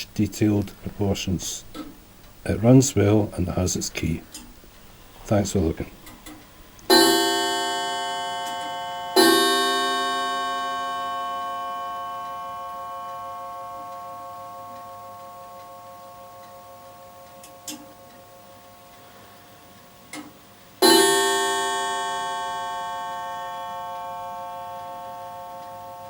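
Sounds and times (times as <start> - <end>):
clock striking a gong: 6.9 - 19.0, 20.8 - 26.0.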